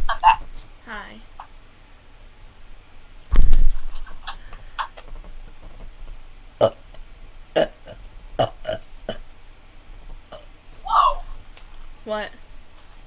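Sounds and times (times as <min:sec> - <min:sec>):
person burping: 0:07.6 - 0:08.8.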